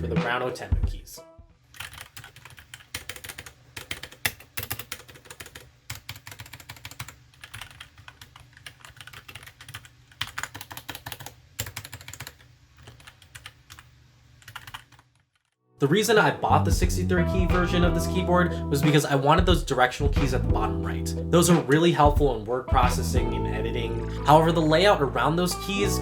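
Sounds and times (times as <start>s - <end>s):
mechanical keyboard typing: 1.8s - 15.4s.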